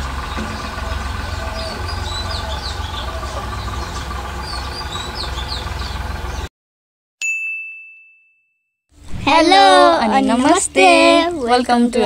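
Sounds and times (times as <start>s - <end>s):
small birds chirping: 0.0s - 6.5s
steady low rumble: 9.0s - 12.0s.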